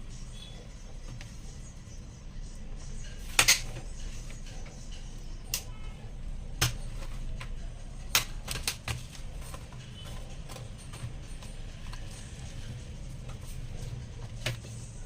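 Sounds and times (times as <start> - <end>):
laptop parts clicking and tapping: 6.6 - 13.6, 14.3 - 14.8.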